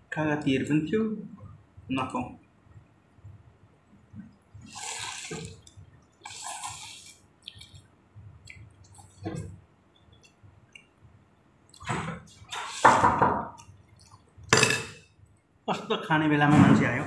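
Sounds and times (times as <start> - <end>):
slurping noodle soup: 4.6 - 7.9.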